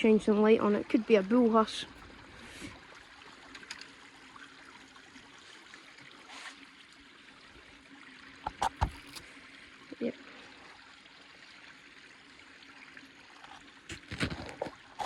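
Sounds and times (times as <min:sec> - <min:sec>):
water lapping over stones: 0:00.0 - 0:09.4, 0:13.2 - 0:15.0.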